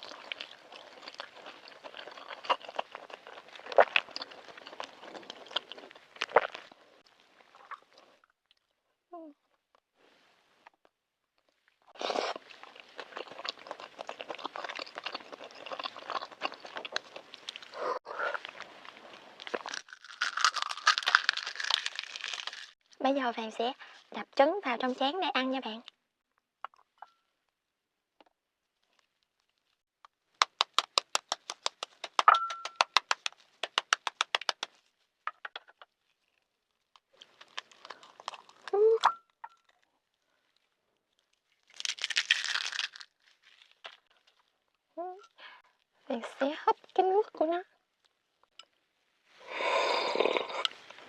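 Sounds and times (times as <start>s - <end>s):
crackling from food being eaten: 0.0s - 8.7s, 11.9s - 17.8s, 18.4s - 22.8s, 30.4s - 32.2s, 36.0s - 38.8s, 39.6s - 44.5s, 49.5s - 50.9s
egg shell crackling: 19.6s - 22.8s, 30.4s - 34.7s, 41.7s - 43.1s
egg shell tapping on bowl: 30.5s - 33.2s.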